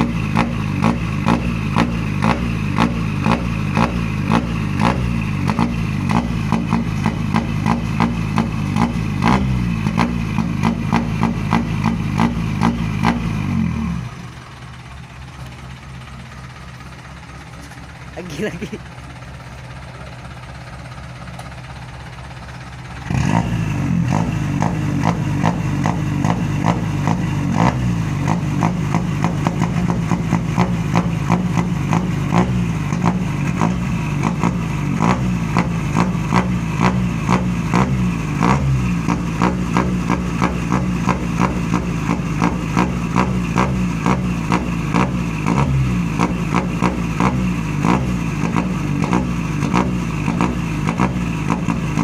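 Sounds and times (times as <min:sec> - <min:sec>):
vehicle engine running: 0:00.0 - 0:52.0
exhaust pops: 0:24.1 - 0:52.0.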